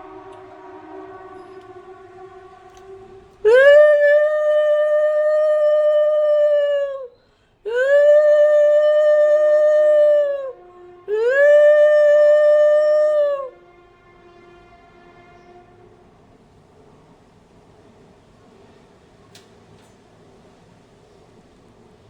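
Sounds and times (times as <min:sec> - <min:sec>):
conch shell blasts: 0:00.0 - 0:03.5.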